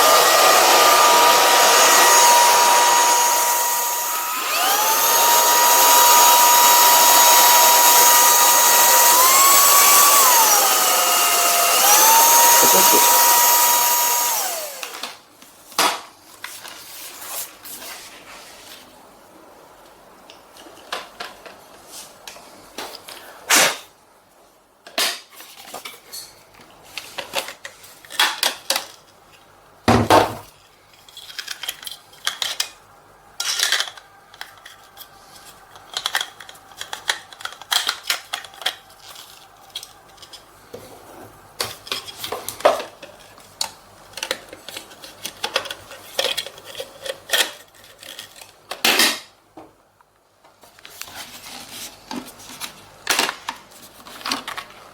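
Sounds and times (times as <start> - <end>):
plastic parts clattering: 30.9 - 32.8, 33.4 - 40.5.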